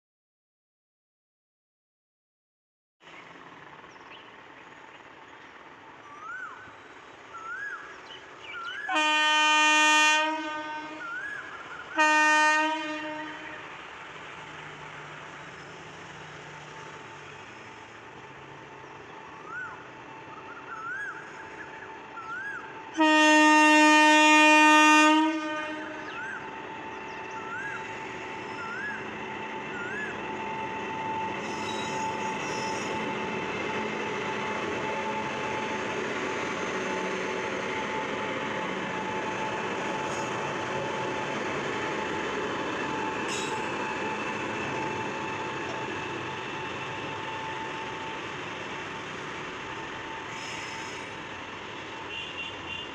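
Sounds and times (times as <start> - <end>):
freight train running: 3.1 - 52.9
locomotive horn blast: 8.9 - 11.3, 11.9 - 13.7, 23.0 - 26.2, 52.1 - 52.9.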